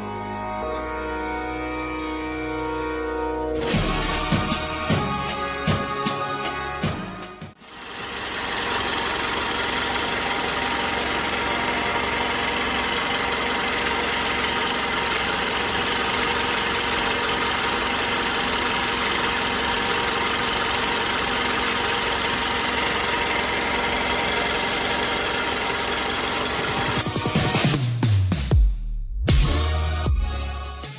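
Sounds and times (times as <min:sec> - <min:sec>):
car engine idling: 0:07.6 - 0:27.1
alternator whining: 0:07.6 - 0:27.2.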